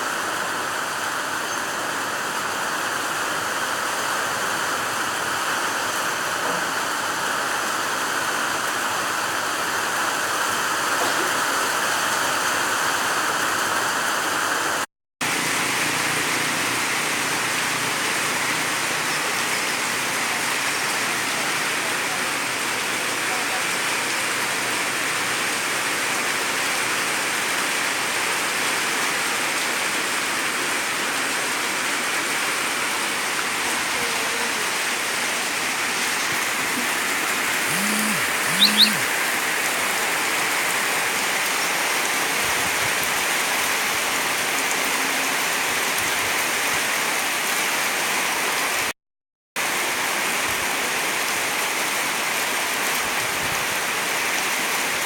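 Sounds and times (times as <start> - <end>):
heavy rain pouring: 0.0 - 48.9, 49.6 - 55.0
short pitched sounds: 37.6 - 39.2.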